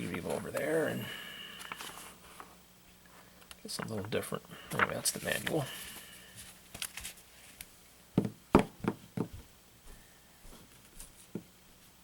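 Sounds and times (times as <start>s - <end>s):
knocks and taps on table: 8.2s - 9.4s.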